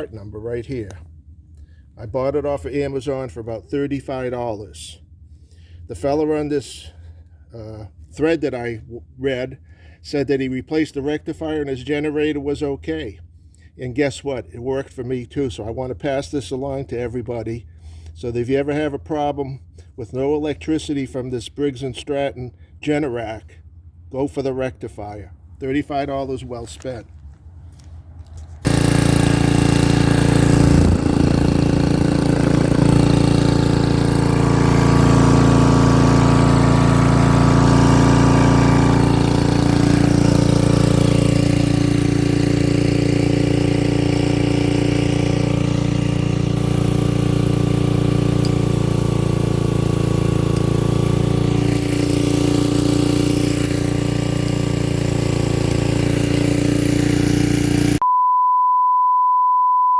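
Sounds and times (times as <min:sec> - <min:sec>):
generator engine running: 0:27.8 - 0:58.0.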